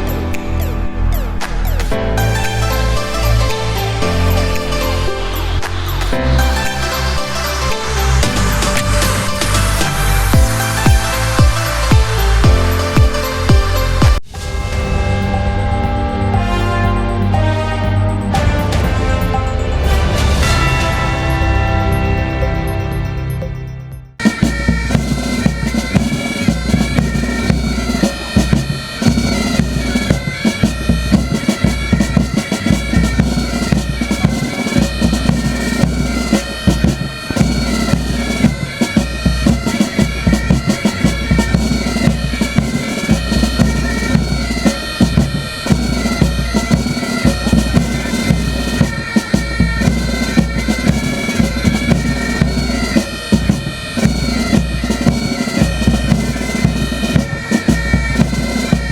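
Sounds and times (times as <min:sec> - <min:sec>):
bagpipes playing over drone: 0:02.6 - 0:23.3, 0:24.2 - 0:58.9
regular drum beat: 0:08.2 - 0:17.7, 0:24.2 - 0:58.9.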